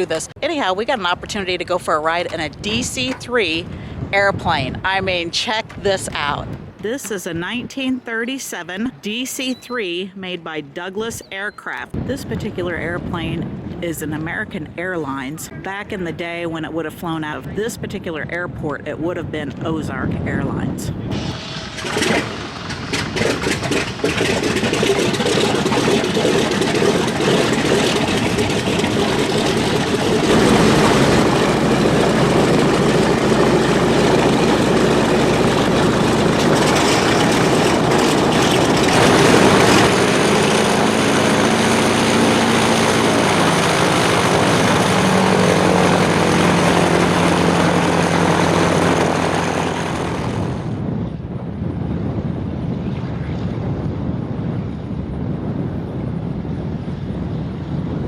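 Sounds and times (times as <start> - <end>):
propeller engines running: 0.0 - 7.8, 21.0 - 58.0
piston engines coughing and popping: 21.2 - 46.6.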